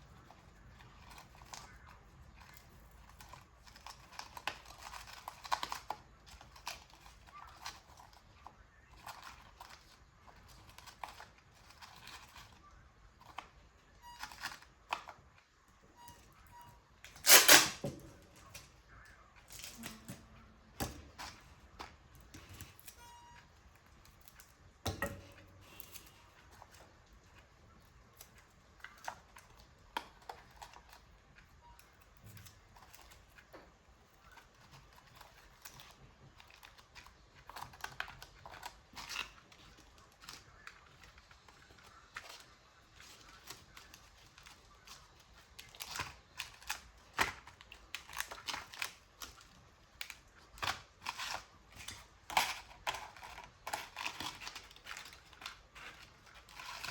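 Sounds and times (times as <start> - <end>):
paper snipping and rustling: 0.0 - 15.7, 17.0 - 56.9.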